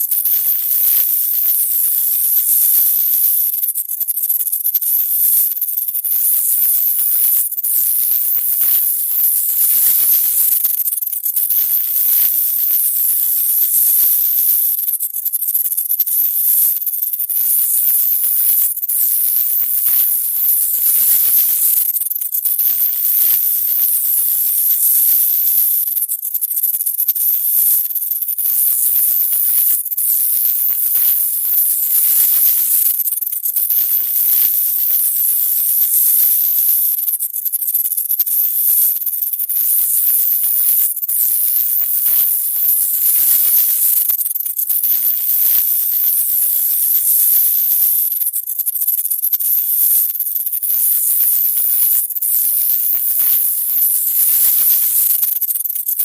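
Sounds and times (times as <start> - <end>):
hiss: 0.0 - 3.4, 17.3 - 21.8, 22.6 - 25.8, 28.4 - 32.9, 33.7 - 36.9, 39.5 - 44.0, 44.7 - 48.1, 50.6 - 55.2
high-pitched insect chatter: 0.0 - 56.0
small chirps: 0.0 - 56.0.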